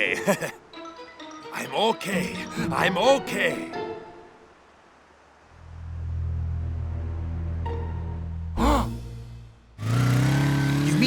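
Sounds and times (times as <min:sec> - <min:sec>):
low steady drone: 0:05.5 - 0:09.6.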